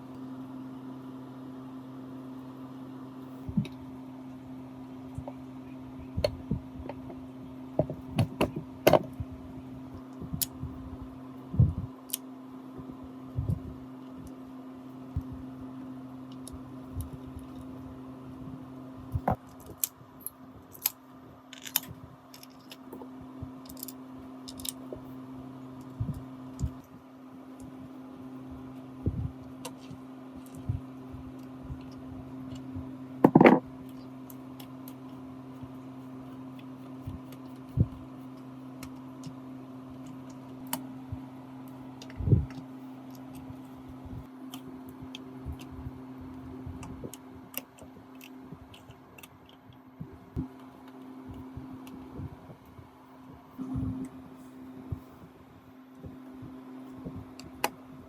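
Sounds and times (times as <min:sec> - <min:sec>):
low electrical hum: 0:00.0 - 0:58.0
knocks and clicks of metal tools: 0:33.3 - 0:33.6.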